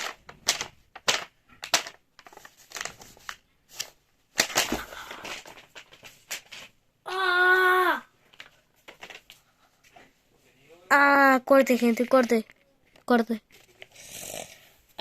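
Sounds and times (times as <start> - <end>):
paper crinkling and rustling: 0.0 - 6.7, 8.3 - 10.1.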